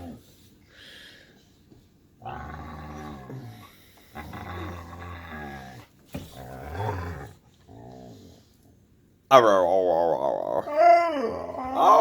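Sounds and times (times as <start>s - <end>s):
dog growl-like talking: 9.3s - 12.0s.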